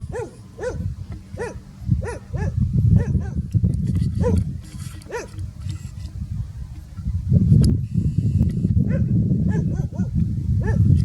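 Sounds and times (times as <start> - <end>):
dog barking: 0.1 - 0.8, 1.4 - 3.4, 5.1 - 5.4, 8.9 - 10.9.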